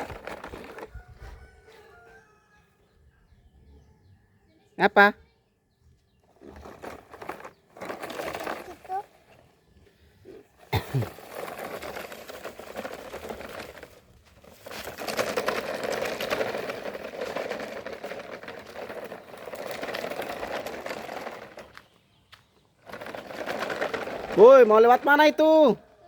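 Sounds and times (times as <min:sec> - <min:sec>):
toy vehicle motor whirring: 0:00.0 - 0:01.4, 0:06.2 - 0:09.4, 0:11.1 - 0:21.9, 0:22.8 - 0:25.7.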